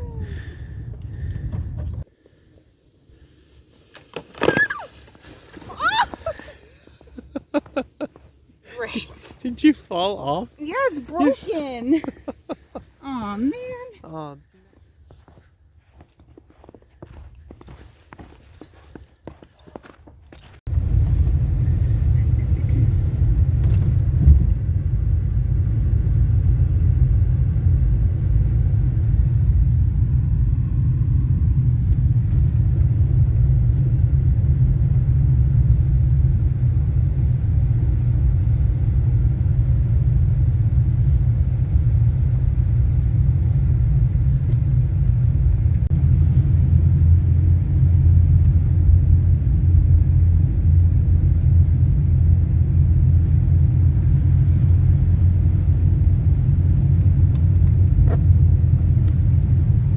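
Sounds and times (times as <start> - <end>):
loud low rumble: 20.7 - 59.9.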